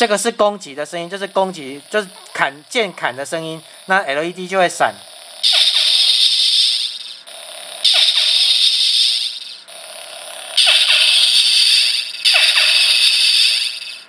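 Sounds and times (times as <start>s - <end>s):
lightsaber hum: 0.0s - 14.0s
lightsaber clash crackling: 4.8s - 7.2s, 7.8s - 9.6s, 10.6s - 13.9s.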